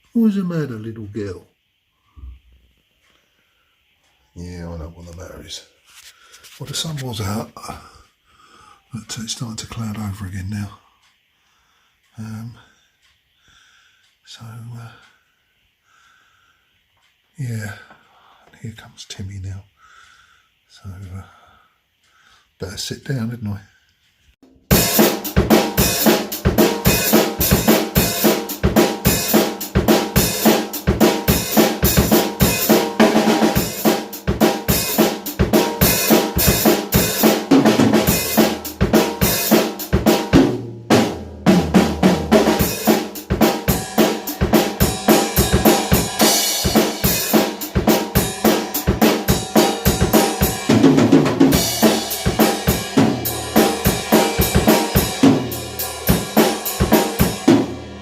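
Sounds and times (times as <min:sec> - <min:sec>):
drum kit groove: 0:24.4 - 0:58.0.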